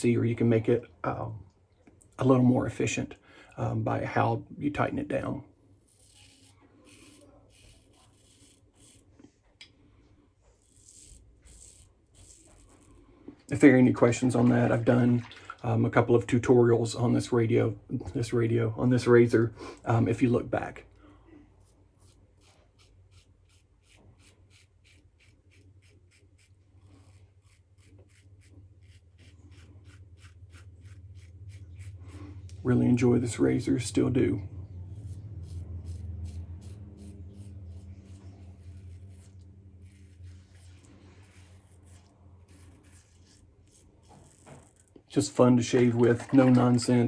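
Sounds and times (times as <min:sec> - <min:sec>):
razor scraping stubble: 0:05.8 - 0:09.4, 0:10.5 - 0:13.0, 0:21.6 - 0:32.6, 0:34.6 - 0:45.1.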